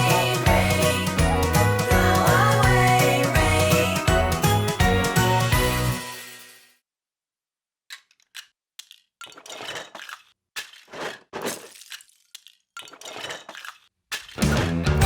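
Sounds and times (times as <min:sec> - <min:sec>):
small hard objects clattering: 0:07.9 - 0:14.6.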